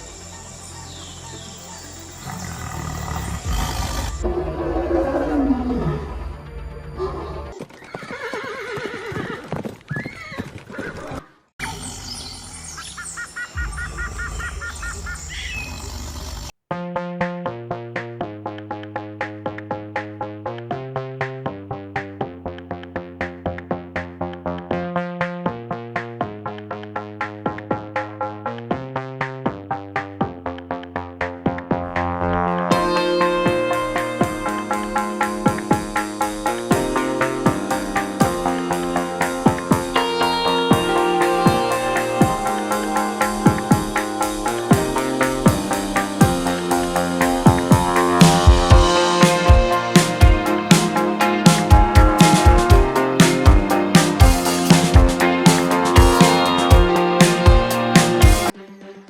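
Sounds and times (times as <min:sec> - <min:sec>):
horse whinnying: 0:07.0 - 0:11.2
background music: 0:16.7 - 0:59.0
steady synth chords: 0:30.6 - 0:58.5
quick repeating synth notes: 0:32.0 - 0:58.5.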